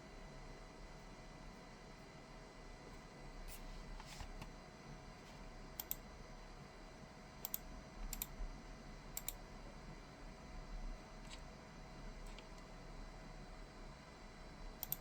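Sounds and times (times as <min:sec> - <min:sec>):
mechanical keyboard clicks: 0:07.4 - 0:08.3, 0:14.8 - 0:15.0.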